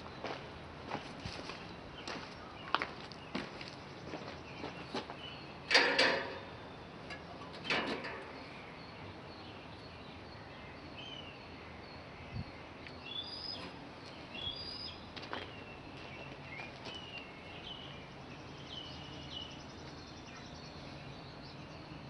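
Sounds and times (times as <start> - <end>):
small birds chirping: 0.0 - 22.0
knocking and clattering: 5.7 - 6.5.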